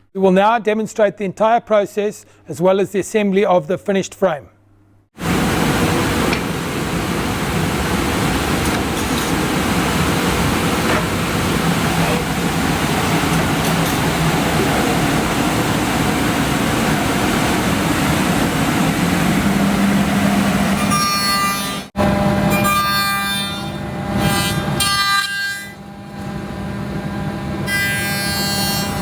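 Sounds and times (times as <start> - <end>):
machine whirring: 5.2 - 22.6.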